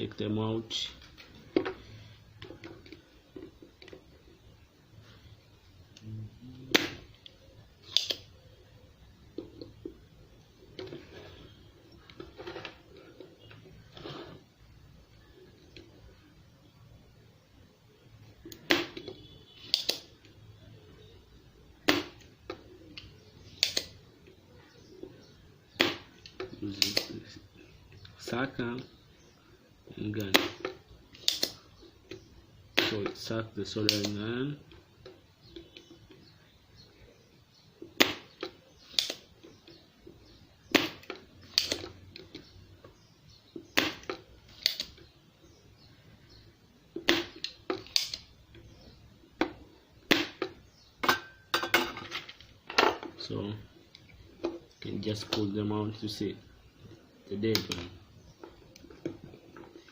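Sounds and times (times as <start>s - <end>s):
desoldering pump snapping: 30.2s - 32.2s, 33.8s - 34.2s, 38.0s - 39.3s, 40.7s - 42.5s, 43.6s - 45.0s.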